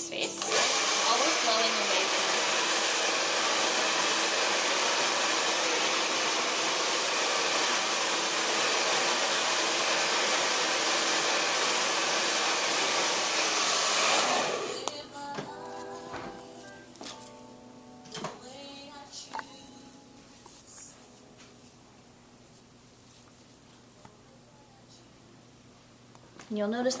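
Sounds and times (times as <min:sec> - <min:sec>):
blow dryer running: 0:00.0 - 0:14.9.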